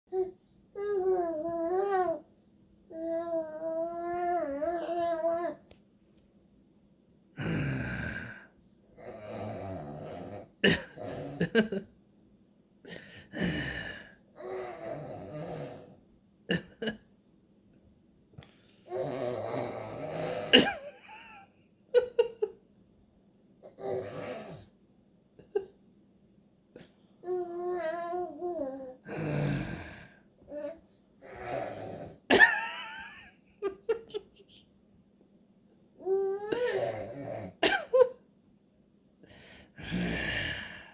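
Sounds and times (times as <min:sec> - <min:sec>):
baby growling: 0:00.1 - 0:02.3, 0:02.9 - 0:05.6, 0:07.4 - 0:11.6, 0:13.3 - 0:16.0, 0:18.9 - 0:21.4, 0:23.6 - 0:24.7, 0:27.2 - 0:32.4, 0:36.0 - 0:37.7, 0:39.8 - 0:40.9
man growling: 0:07.4 - 0:11.7, 0:29.1 - 0:30.2, 0:39.8 - 0:40.9.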